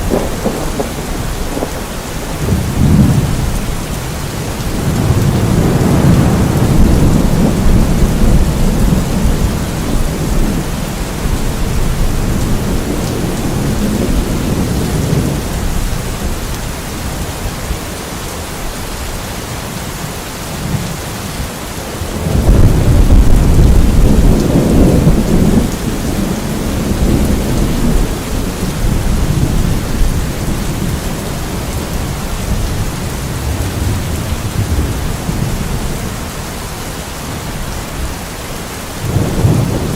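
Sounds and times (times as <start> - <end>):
rolling thunder: 0.0 - 16.6, 22.0 - 36.3, 39.0 - 39.9
steady rain: 0.0 - 39.9.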